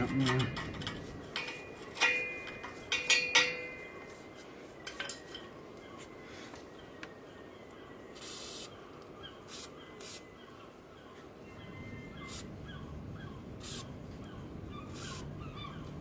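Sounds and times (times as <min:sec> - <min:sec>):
metallic clinks: 0:00.0 - 0:04.1
metal tool scraping on bolts: 0:00.0 - 0:05.5.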